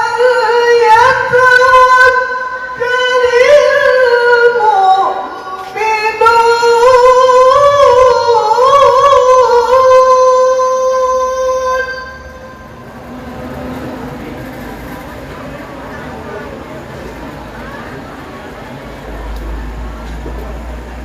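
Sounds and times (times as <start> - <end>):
man reciting melodically: 0.0 - 12.7.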